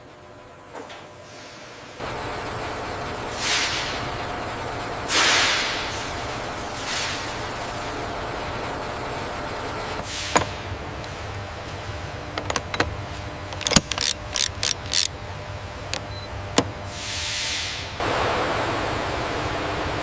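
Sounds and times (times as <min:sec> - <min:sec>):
steady machine hum: 0:02.0 - 0:20.0
ratchet-like clicks: 0:13.5 - 0:15.1
sharp mechanical clicks: 0:13.5 - 0:15.2.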